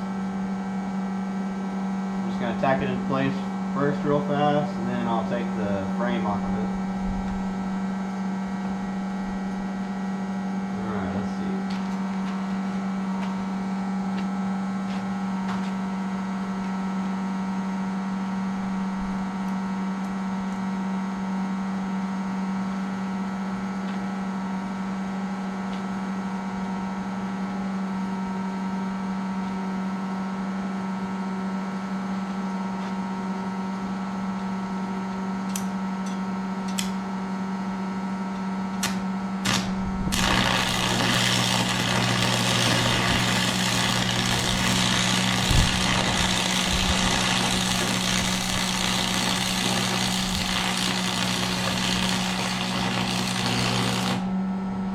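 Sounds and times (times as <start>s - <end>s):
welder humming: 0.0s - 17.2s, 38.7s - 54.9s
welding arc crackling: 38.8s - 54.3s.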